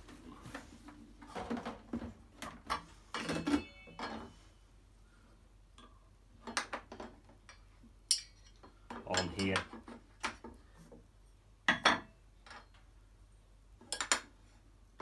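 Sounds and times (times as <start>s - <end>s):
metallic ring: 3.2s - 4.3s.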